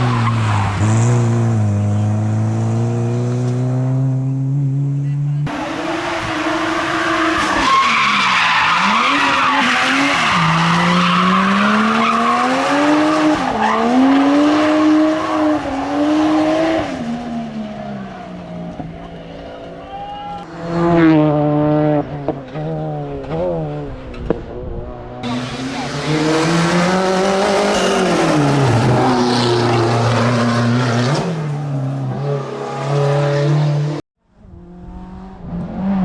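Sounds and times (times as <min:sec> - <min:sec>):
race car engine revving: 0:00.0 - 0:19.9, 0:25.2 - 0:36.0
tyre squeal: 0:05.5 - 0:20.4.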